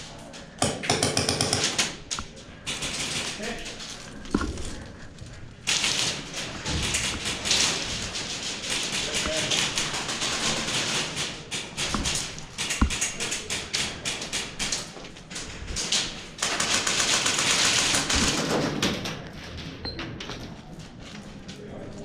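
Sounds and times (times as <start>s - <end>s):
airsoft guns firing: 0.6s - 3.7s, 5.7s - 14.8s
rustling movement: 1.8s - 16.4s.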